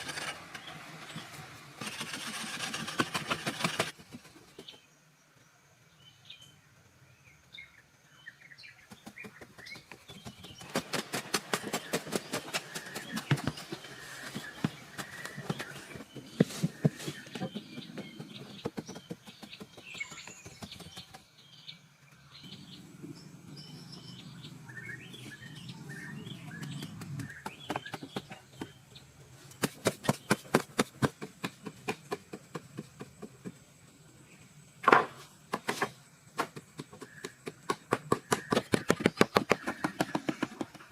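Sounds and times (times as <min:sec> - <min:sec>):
birds chirping: 0:00.0 - 0:40.9
quick evenly spaced knocks: 0:01.8 - 0:04.8, 0:08.8 - 0:21.4, 0:26.4 - 0:28.9, 0:29.6 - 0:33.7, 0:34.8 - 0:40.9.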